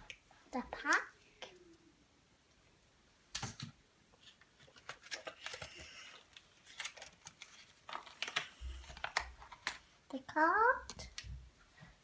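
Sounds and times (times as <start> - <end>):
packaging crinkling: 4.6 - 9.8.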